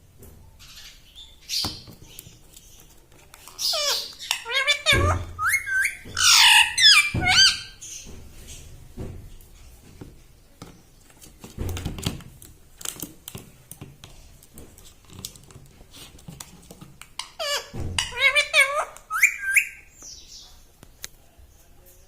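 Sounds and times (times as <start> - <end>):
parrot squawking: 3.6 - 7.8, 17.2 - 19.9.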